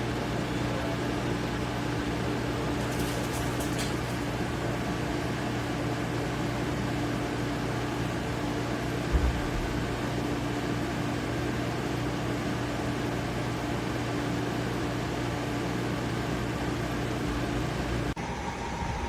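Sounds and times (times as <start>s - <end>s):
air conditioner fan rush: 0.0s - 19.0s
higher-toned steady hum: 18.1s - 19.0s.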